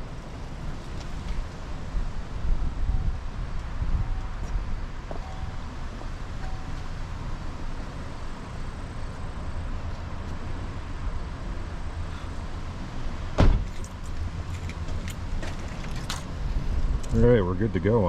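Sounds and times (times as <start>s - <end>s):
sharp knock: 13.4s - 13.7s.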